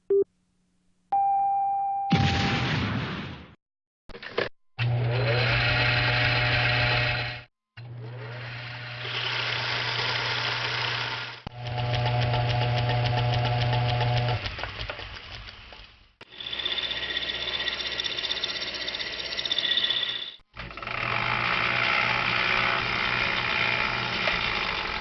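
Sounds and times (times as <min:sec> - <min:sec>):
electric motor whining and humming: 0:04.8 - 0:14.4.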